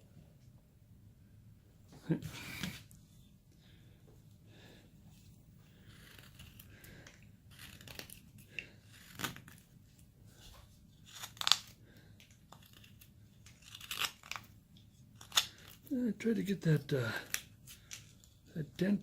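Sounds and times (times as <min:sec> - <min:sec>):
carving knife scraping wood: 0:05.7 - 0:09.7, 0:11.0 - 0:11.7, 0:12.5 - 0:14.5, 0:15.2 - 0:15.9.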